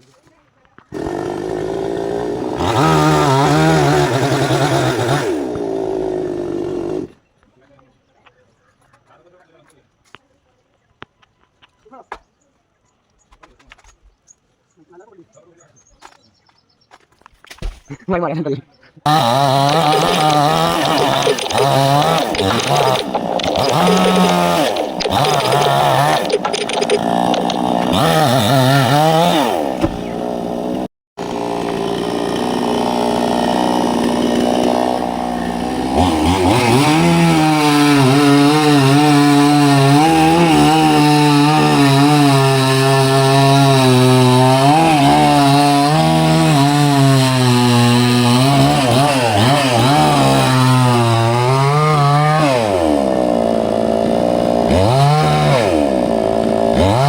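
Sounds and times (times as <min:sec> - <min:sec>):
chainsaw cutting wood: 0:00.8 - 0:07.2, 0:19.1 - 0:57.0.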